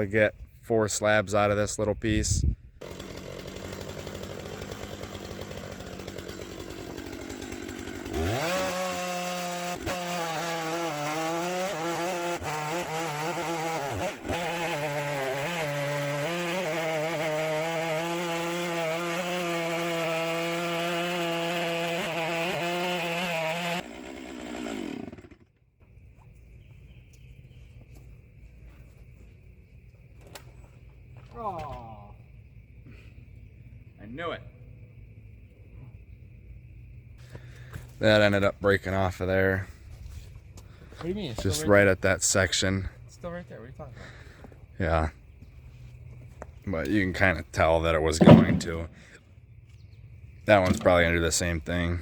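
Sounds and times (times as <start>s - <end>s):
chainsaw cutting log: 2.8s - 25.6s, 48.0s - 49.2s.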